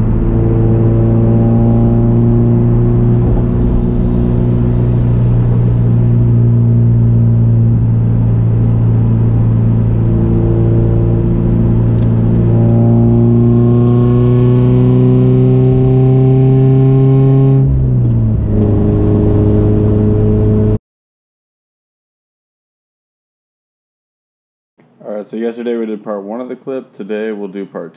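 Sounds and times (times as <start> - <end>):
car exhaust while driving: 0.0 - 20.8.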